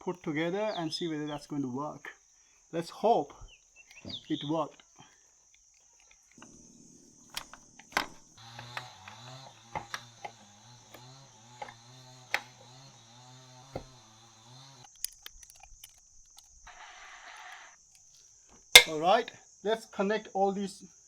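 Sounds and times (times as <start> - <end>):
metal tools clicking and clinking: 18.8 - 19.3.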